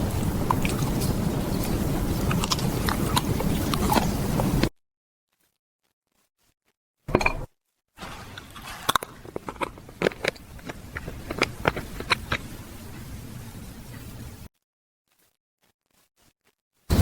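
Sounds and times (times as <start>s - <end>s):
small crisp chewing crunches: 0.0s - 4.7s, 5.3s - 6.8s, 15.1s - 16.8s
loud crunch of snack bite: 2.3s - 4.2s.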